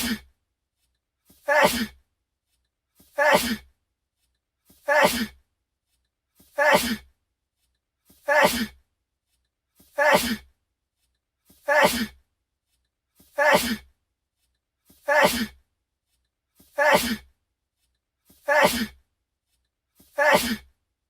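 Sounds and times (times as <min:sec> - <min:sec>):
man sneezing: 0:00.0 - 0:00.2, 0:01.4 - 0:02.0, 0:03.2 - 0:03.6, 0:04.8 - 0:05.4, 0:06.6 - 0:07.0, 0:08.3 - 0:08.8, 0:10.0 - 0:10.4, 0:11.6 - 0:12.2, 0:13.4 - 0:13.8, 0:15.1 - 0:15.6, 0:16.8 - 0:17.3, 0:18.5 - 0:19.0, 0:20.2 - 0:20.7.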